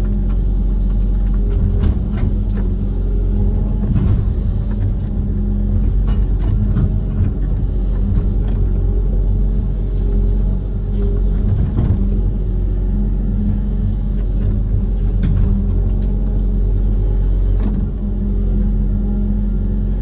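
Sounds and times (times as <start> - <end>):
diesel engine rumble: 0.0 - 20.0.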